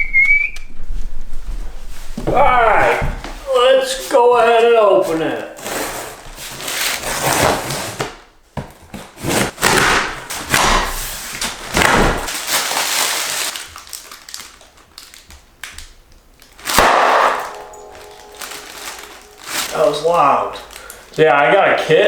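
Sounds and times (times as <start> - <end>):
tape and cardboard ripping: 5.6 - 8.2, 8.8 - 20.1.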